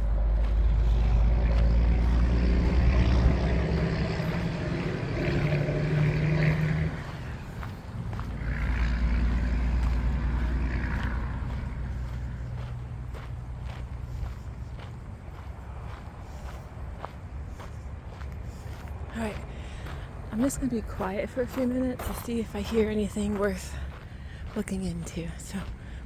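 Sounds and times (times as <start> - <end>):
motor engine humming: 0.0 - 26.0.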